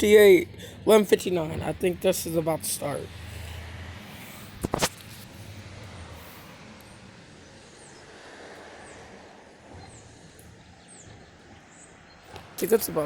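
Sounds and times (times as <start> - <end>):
distant road traffic rumble: 0.0 - 13.0.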